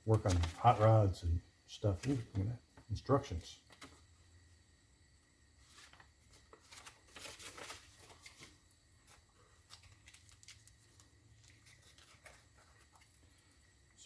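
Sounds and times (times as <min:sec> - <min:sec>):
packaging rustling and crinkling: 0:00.1 - 0:01.0, 0:05.6 - 0:13.3.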